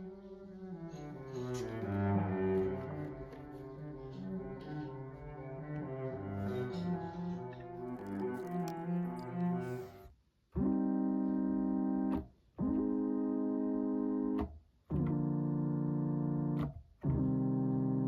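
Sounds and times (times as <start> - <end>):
keyboard synth notes and chords: 10.6 - 18.0.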